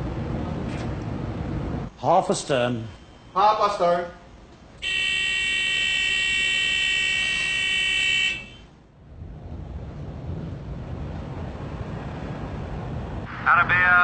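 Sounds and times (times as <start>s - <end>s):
high buzzing alarm tone: 2.4s - 8.8s
low rumble: 9.0s - 13.3s.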